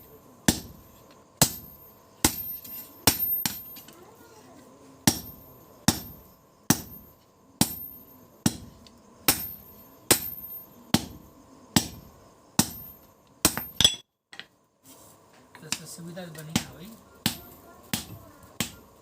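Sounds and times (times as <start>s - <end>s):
hammer striking steel: 0.5s - 3.9s, 5.0s - 14.0s.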